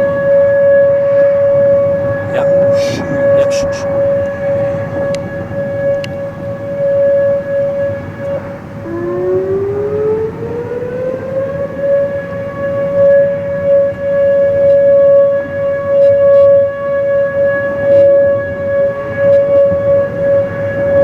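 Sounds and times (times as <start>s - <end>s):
warning sirens wailing: 8.8s - 16.0s.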